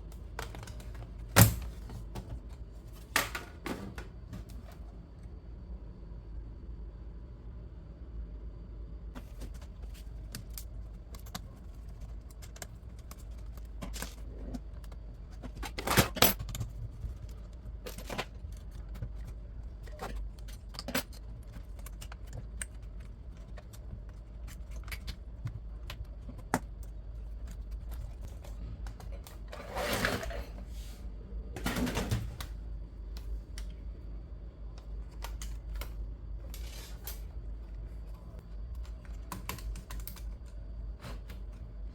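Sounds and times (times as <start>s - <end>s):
low steady hum: 0.0s - 41.9s
tools and plastic parts clicking: 9.2s - 29.4s.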